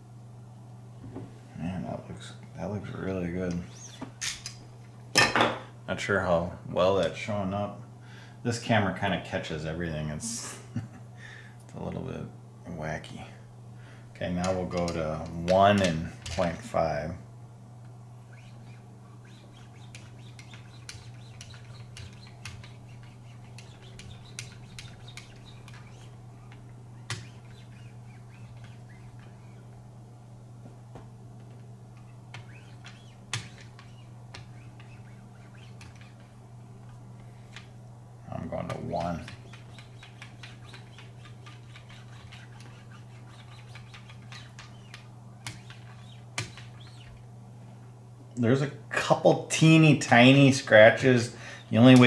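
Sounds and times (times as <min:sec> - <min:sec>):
low hum: 0:10.4 - 0:48.9
abrasive strokes on knife blade: 0:18.2 - 0:29.7, 0:32.4 - 0:36.4, 0:38.9 - 0:47.1.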